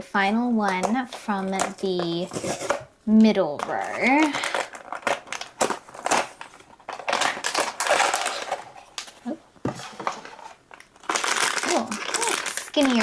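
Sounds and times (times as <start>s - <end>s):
packaging crackling and rustling: 3.6s - 9.2s, 9.8s - 13.0s.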